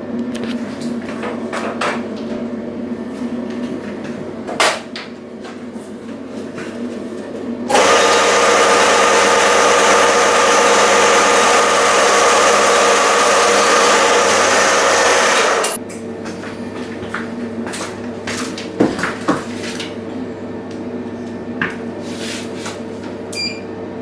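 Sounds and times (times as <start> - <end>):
machine humming and hissing: 7.7 - 15.8.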